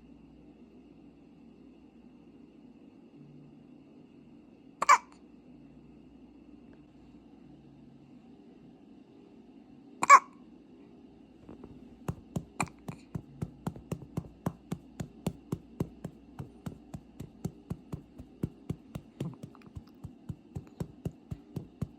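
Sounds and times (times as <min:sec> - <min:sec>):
baby hiccup: 0:04.8 - 0:05.1, 0:10.0 - 0:10.3
soft taps or clicks: 0:11.4 - 0:21.9.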